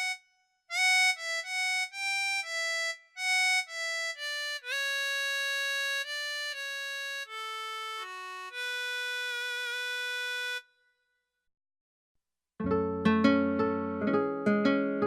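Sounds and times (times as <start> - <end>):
digital piano sustained notes: 12.6 - 15.0.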